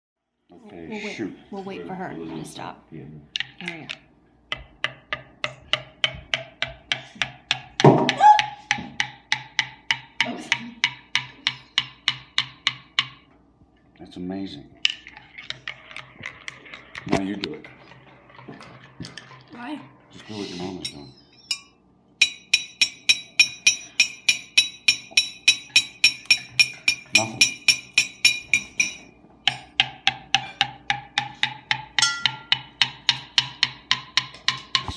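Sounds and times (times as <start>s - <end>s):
spoon tapping on a cup: 3.4s - 13.2s, 21.5s - 34.9s.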